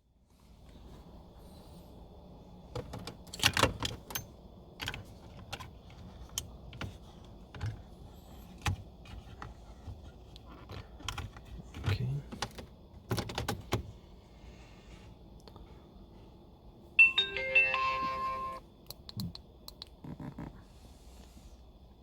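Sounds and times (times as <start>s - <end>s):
low steady hum: 0.0s - 22.0s.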